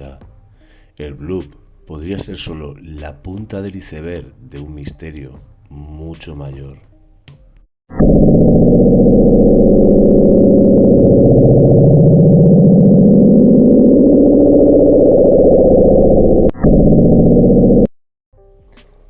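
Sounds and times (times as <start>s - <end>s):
low wavering underwater drone: 7.9s - 17.9s.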